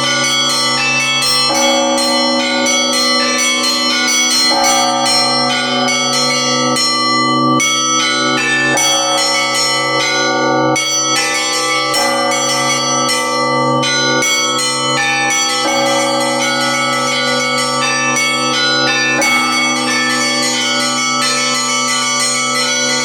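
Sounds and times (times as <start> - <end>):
small treble bells ringing: 0.0 - 23.0
deep bell struck: 1.5 - 7.4, 11.9 - 14.1.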